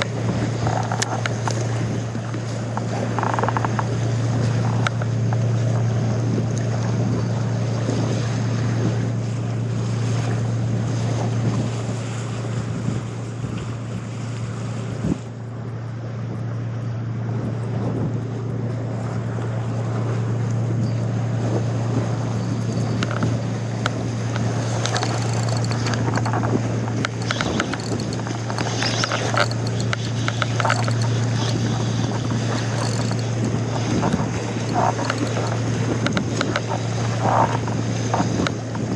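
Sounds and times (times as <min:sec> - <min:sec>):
boat engine humming: 0:00.0 - 0:38.9
water noise: 0:00.0 - 0:38.9
wind: 0:00.0 - 0:38.9
short clicks and knocks: 0:22.3 - 0:38.9.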